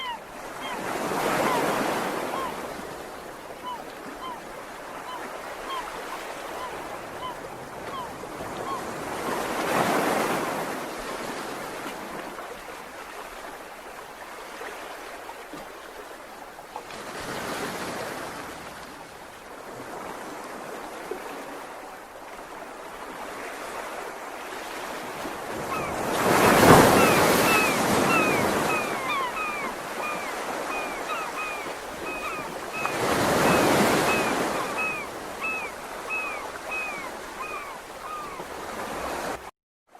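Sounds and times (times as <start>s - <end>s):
ocean waves breaking on shore: 0.0s - 39.5s
birds chirping: 26.9s - 38.4s.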